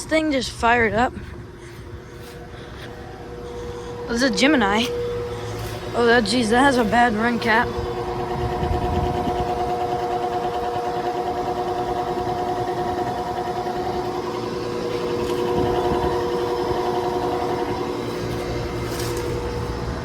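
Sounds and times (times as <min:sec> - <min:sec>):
air conditioner buzzing hum: 0:00.0 - 0:20.0
fan noise: 0:00.0 - 0:20.0.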